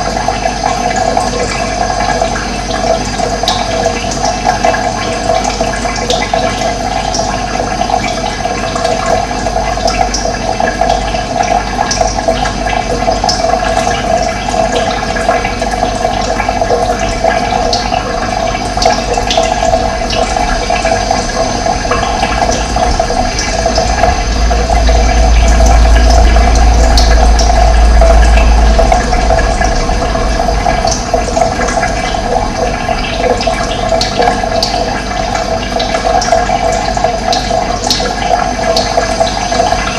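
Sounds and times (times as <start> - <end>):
running water rushing: 0.0 - 39.9
low rumble: 15.3 - 36.8
splashy ticks: 21.8 - 39.9.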